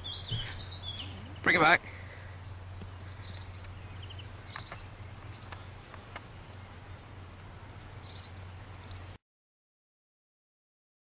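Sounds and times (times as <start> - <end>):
birds chirping: 0.0 - 9.2
low hum: 0.0 - 9.2.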